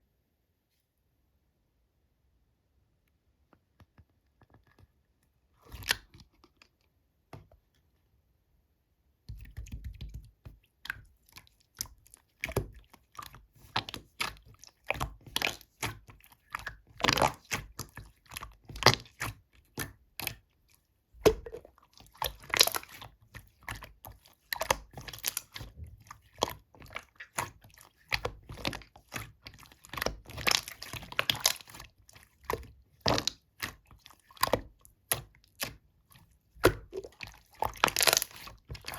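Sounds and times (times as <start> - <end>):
slime squished by hand: 9.4 - 38.9.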